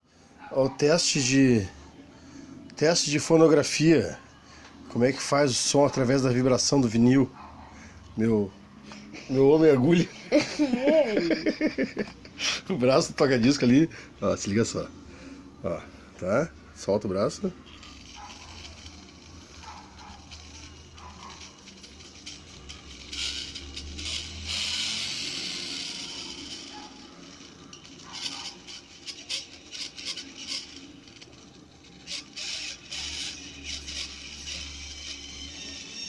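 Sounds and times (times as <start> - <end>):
vinyl record playing hissy: 16.5 - 36.0.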